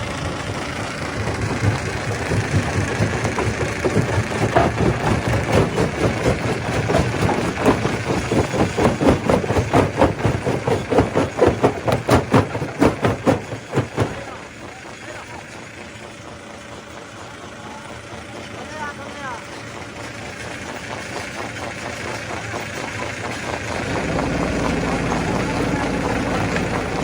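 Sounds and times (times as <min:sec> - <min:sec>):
stone crusher machine drone: 0:00.0 - 0:15.0, 0:21.2 - 0:27.0
regular mechanical knocking: 0:00.4 - 0:14.6.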